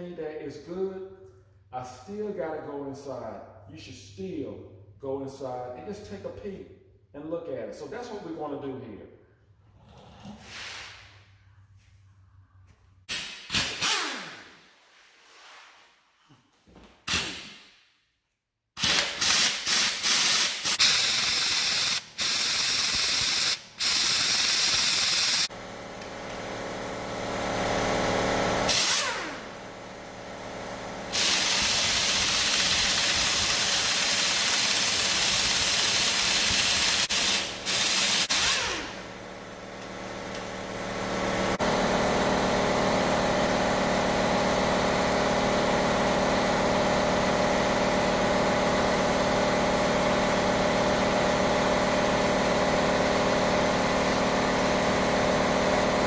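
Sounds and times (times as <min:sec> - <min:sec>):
compressed-air tool hissing: 0:18.8 - 0:25.5, 0:31.1 - 0:38.8.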